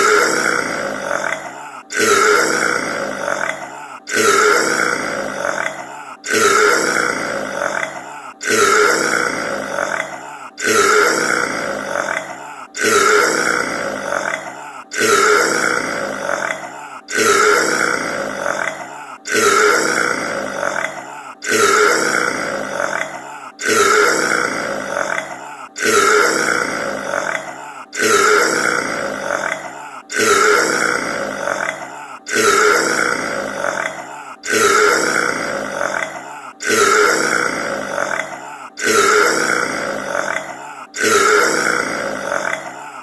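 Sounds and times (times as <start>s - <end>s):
man burping: 0.0s - 43.0s.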